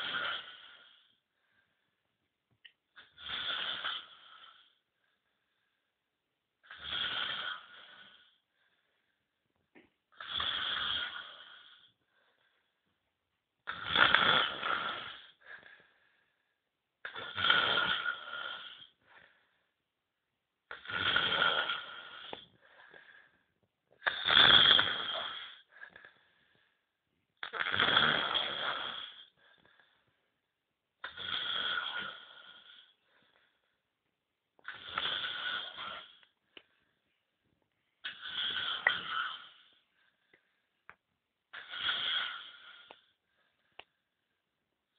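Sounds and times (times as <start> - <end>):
man snoring: 6.7 - 8.3, 10.2 - 11.9, 17.1 - 19.0, 20.7 - 22.4, 24.0 - 25.7, 27.4 - 29.4, 31.0 - 33.0, 34.6 - 36.2, 38.0 - 39.7.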